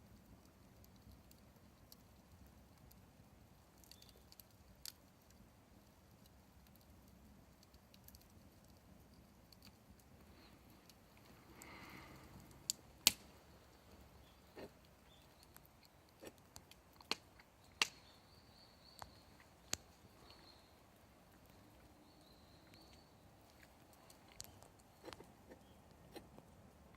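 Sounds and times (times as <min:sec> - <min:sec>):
wood fire crackling: 0:00.0 - 0:26.9
sharp fire pops: 0:12.7 - 0:13.4, 0:17.0 - 0:18.1.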